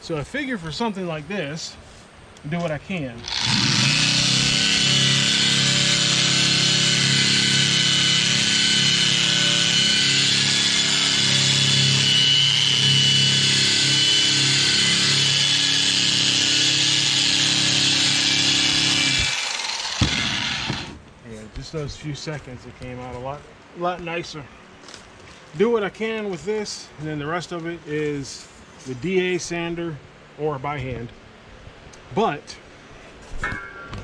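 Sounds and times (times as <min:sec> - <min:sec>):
drum sander grinding metal: 0:03.2 - 0:21.0
sander winding down: 0:03.2 - 0:21.0.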